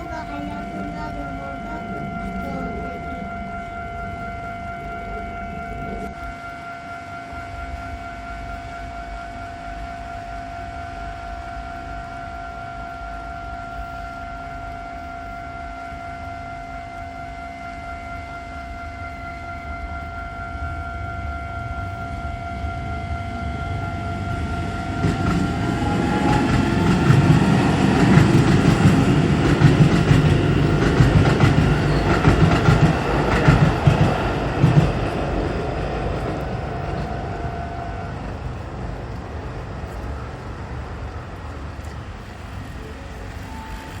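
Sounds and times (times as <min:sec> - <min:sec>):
electric train rumbling past: 0:00.0 - 0:44.0
level-crossing alarm ringing: 0:00.0 - 0:44.0
train wheels clacking: 0:21.9 - 0:44.0.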